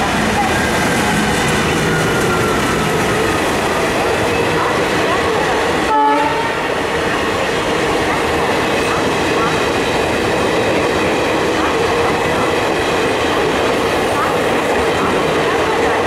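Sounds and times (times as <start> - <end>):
train rumble: 0.0 - 16.0
short train horn toot: 5.9 - 6.6.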